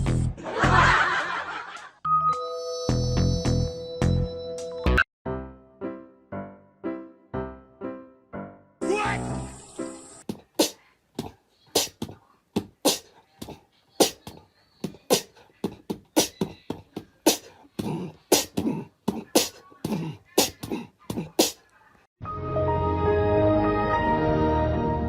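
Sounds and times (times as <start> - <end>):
music: 0.0 - 0.9, 2.1 - 10.2, 22.2 - 25.0.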